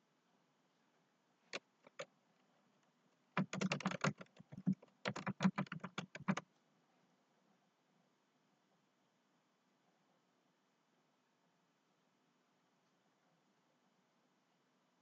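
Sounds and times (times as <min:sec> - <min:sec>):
computer keyboard typing: 0:01.5 - 0:02.1, 0:03.4 - 0:06.4.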